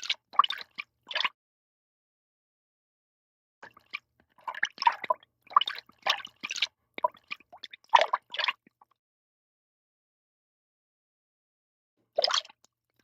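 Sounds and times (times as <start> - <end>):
water drips and splashes: 0.0 - 1.4, 3.6 - 8.9, 12.1 - 12.8.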